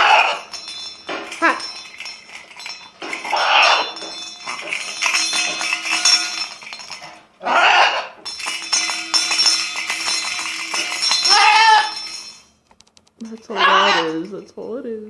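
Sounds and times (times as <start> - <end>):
hand bell ringing: 0.0 - 7.2, 8.2 - 12.6.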